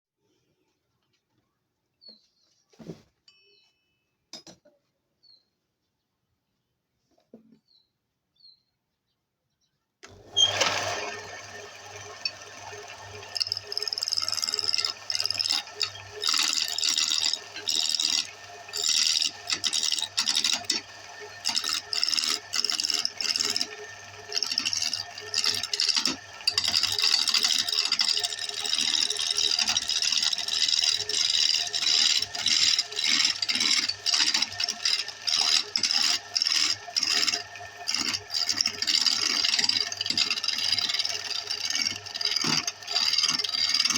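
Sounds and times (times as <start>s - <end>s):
wood lathe motor hum: 10.0s - 43.9s
turning tool scraping wood: 10.1s - 43.9s.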